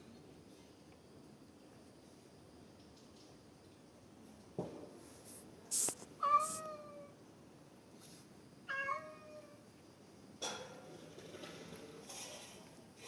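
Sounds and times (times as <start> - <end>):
hissy rustles: 5.1 - 6.7
cat meowing: 6.2 - 7.2, 8.7 - 9.6.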